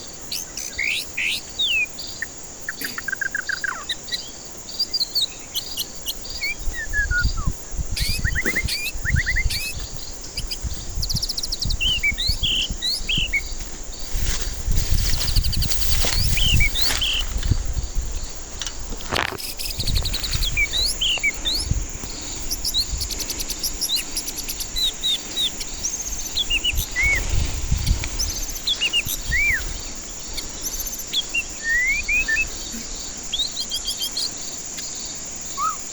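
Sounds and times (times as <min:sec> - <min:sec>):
high insect buzz: 0:00.0 - 0:35.9
bird singing whistled phrases: 0:00.3 - 0:01.9, 0:04.8 - 0:09.8, 0:10.4 - 0:13.5, 0:26.3 - 0:29.7, 0:30.6 - 0:34.3, 0:35.5 - 0:35.9.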